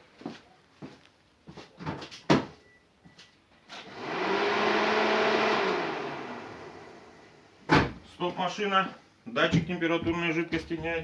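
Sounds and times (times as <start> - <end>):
radiator cooling fan whooshing: 3.9 - 7.2.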